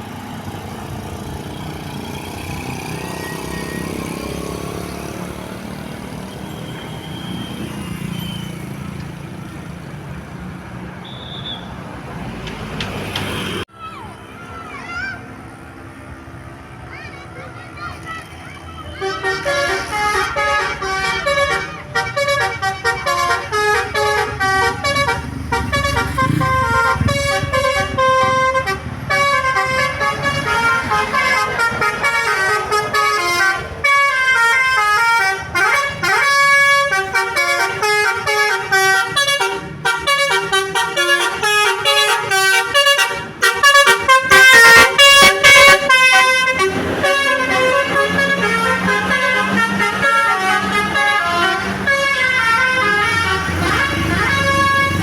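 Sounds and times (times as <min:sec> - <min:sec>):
bus horn playing melodies: 0:19.0 - 0:55.0.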